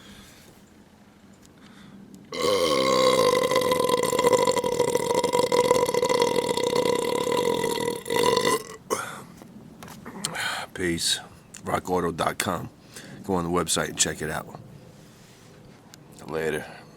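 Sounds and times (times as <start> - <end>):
man belching loudly: 2.3 - 9.1.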